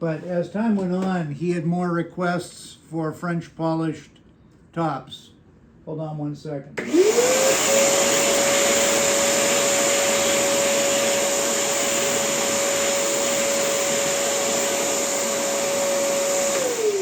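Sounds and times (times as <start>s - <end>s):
electric motor whining: 6.8s - 17.0s.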